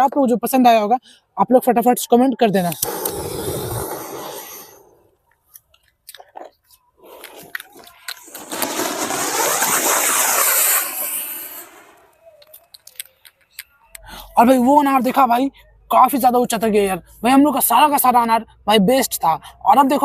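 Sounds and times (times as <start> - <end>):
firework fountain crackling hiss: 2.7 - 5.1, 7.0 - 12.8.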